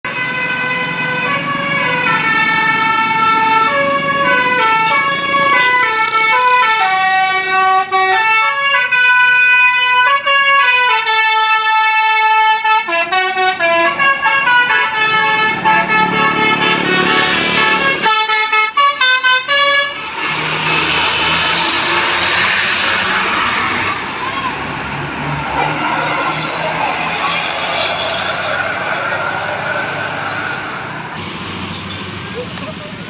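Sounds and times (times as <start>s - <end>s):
multi-tone bus horn melody: 0.1s - 24.5s.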